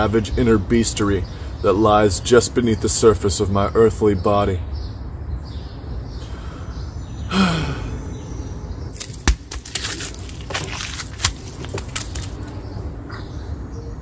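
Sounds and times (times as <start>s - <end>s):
sharp knocks: 9.0s - 10.2s.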